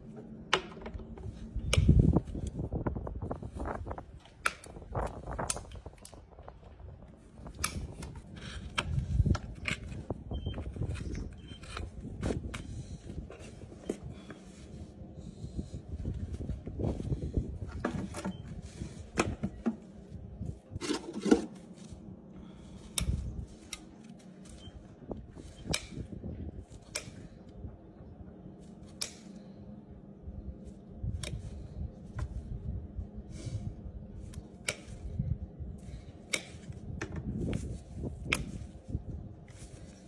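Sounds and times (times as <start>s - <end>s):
hoof nippers snipping: 34.3s - 35.1s.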